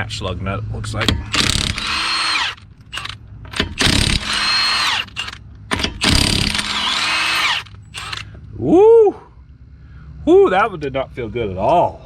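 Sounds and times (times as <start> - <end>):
impact wrench hammering: 1.0 - 8.2.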